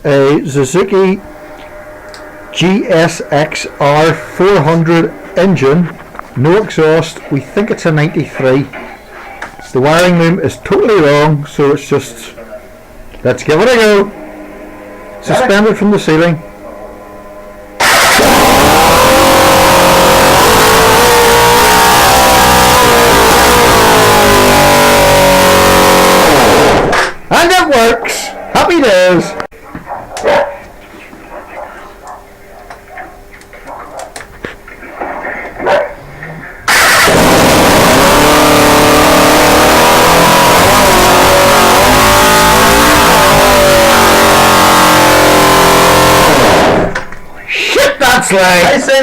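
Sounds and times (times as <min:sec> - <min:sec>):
motorcycle engine revving: 0:17.8 - 0:27.2, 0:36.7 - 0:47.1.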